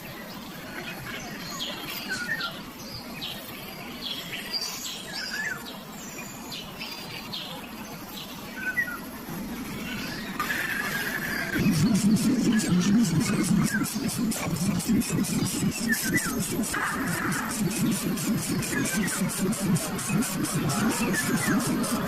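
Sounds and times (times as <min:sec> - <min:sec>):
birds chirping: 0:08.2 - 0:22.0.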